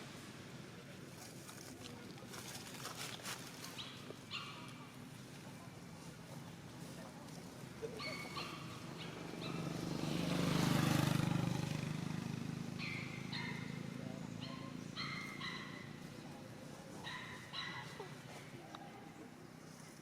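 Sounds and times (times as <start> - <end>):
vehicle rumble passing by: 4.9 - 20.0.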